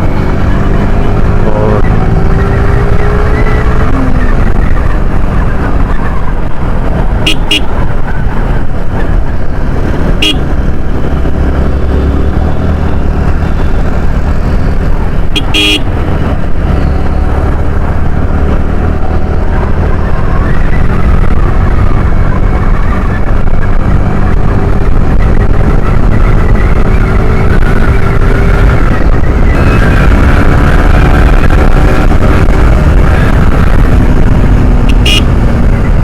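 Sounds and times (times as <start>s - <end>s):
motorcycle engine running: 0.0s - 36.0s
road noise rumble: 0.0s - 36.0s
vehicle horn toots: 7.2s - 7.8s, 10.2s - 10.5s, 15.3s - 16.0s, 34.9s - 35.4s.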